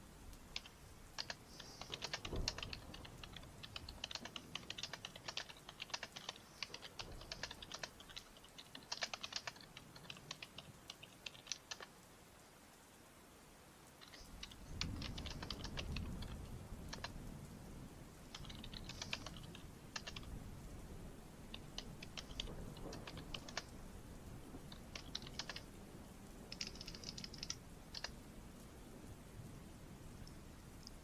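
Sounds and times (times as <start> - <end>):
typing on a computer keyboard: 0.5 - 11.9, 14.0 - 17.2, 18.3 - 20.4, 21.5 - 23.8, 24.6 - 25.7, 26.5 - 28.2.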